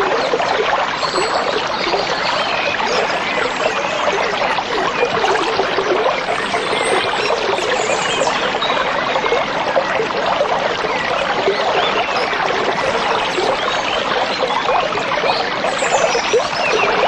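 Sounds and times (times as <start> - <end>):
stream babbling over stones: 0.0 - 17.0.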